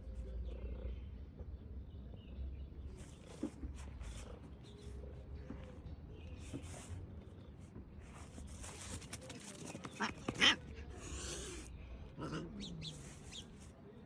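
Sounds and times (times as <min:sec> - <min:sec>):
rustling: 0:03.0 - 0:10.7
pet animal crying: 0:09.8 - 0:13.5.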